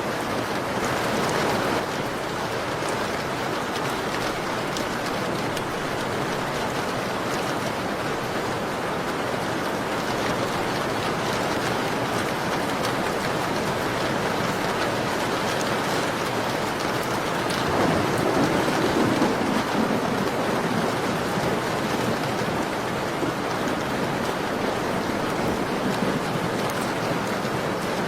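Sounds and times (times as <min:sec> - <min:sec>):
rain pattering on a window: 0:00.0 - 0:28.0.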